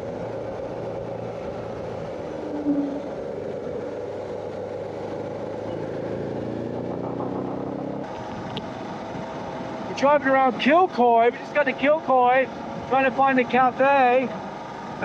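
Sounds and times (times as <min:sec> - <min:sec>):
motorcycle engine running: 0:00.0 - 0:09.9
wind and road noise: 0:00.0 - 0:15.0.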